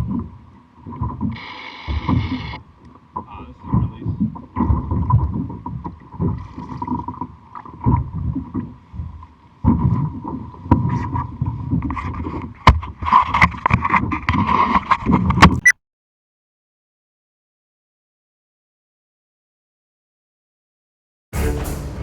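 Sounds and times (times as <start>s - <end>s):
water slapping against kayak hull: 0.0s - 15.6s.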